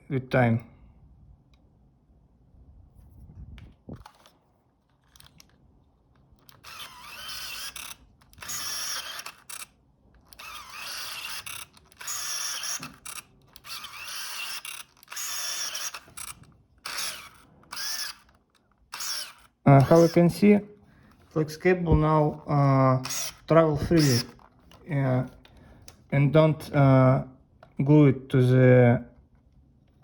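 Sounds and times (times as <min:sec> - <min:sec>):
lens motor whirring whine: 0:03.7 - 0:26.0.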